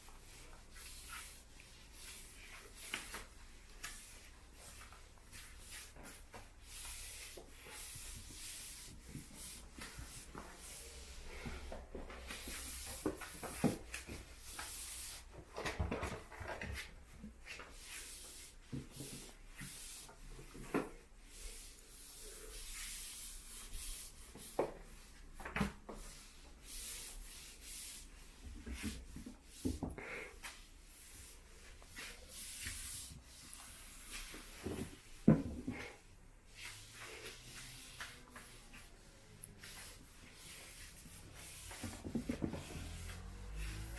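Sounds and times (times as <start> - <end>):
floor wiper swishing on floor: 0.0 - 15.7, 30.4 - 43.9.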